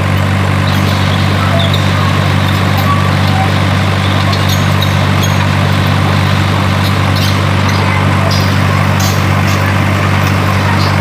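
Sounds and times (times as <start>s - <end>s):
heavy engine idling: 0.0s - 11.0s.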